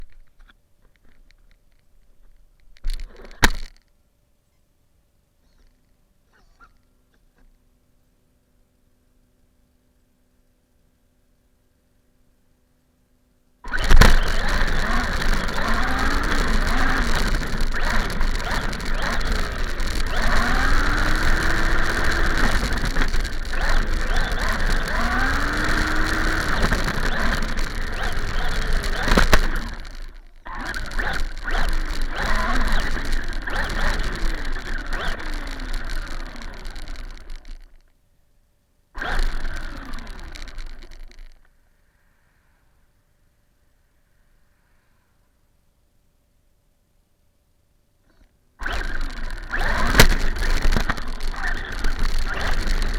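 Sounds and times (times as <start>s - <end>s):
constant hiss: 0.0s - 52.9s
rc car motor revving: 13.6s - 37.8s, 39.0s - 41.4s, 48.1s - 52.9s.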